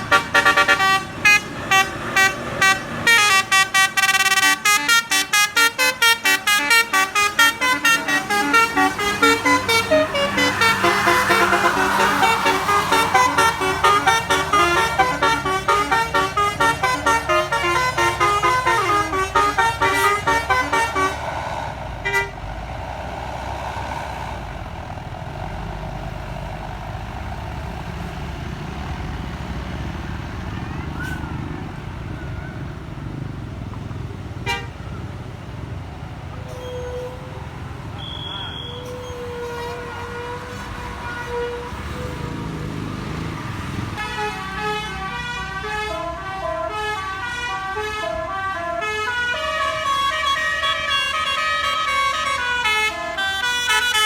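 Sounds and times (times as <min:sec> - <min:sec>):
musical bus horn tune: 0:00.0 - 0:22.6, 0:34.4 - 0:34.9, 0:36.3 - 0:54.0
road noise: 0:00.0 - 0:54.0
vehicle engine rumble: 0:00.0 - 0:54.0.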